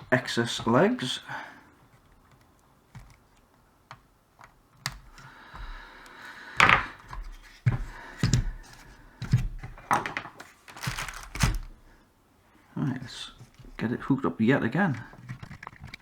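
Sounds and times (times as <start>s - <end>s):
knocks of tools being handled: 6.6s - 11.7s.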